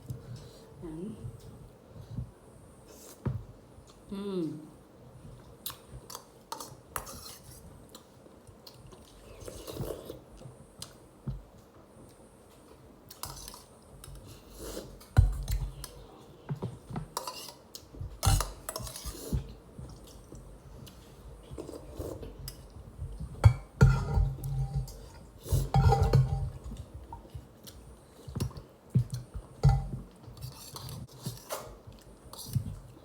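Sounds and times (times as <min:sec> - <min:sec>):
cutlery clinking on dishes: 0:25.6 - 0:26.6.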